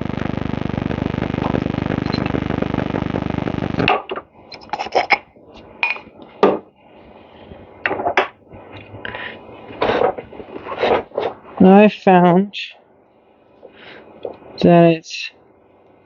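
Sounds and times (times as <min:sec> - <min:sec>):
loud steady rushing noise: 0:00.0 - 0:03.9.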